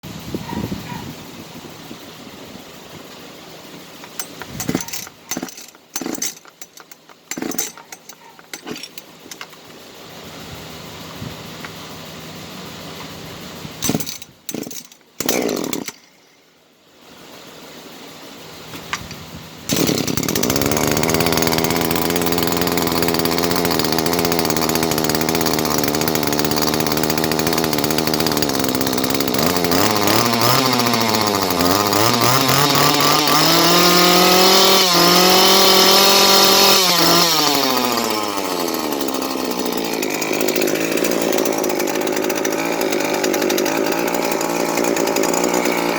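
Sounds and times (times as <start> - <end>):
chainsaw idling and revving: 4.0 - 9.5, 13.8 - 16.2, 19.7 - 45.9
chainsaw pull-start strokes: 4.0 - 9.7, 13.8 - 16.4, 19.7 - 45.9.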